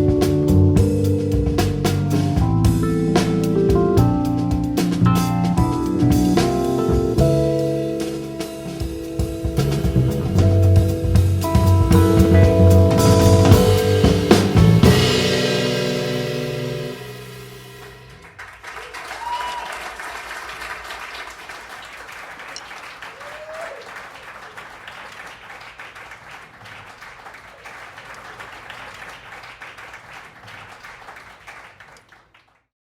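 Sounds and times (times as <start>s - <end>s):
band chord ringing: 0.9s - 18.2s
audience applauding: 18.2s - 32.6s
crowd cries: 18.8s - 20.2s, 23.0s - 24.2s.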